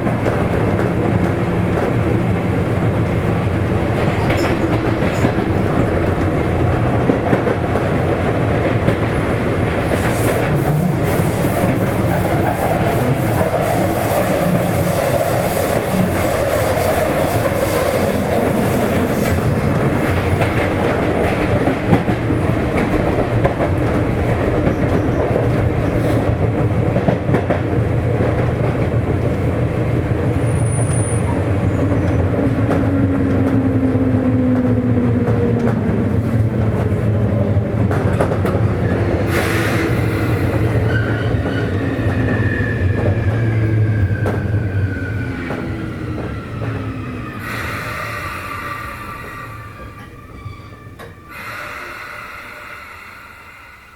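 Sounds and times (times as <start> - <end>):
electric train running noise: 29.9 - 53.9.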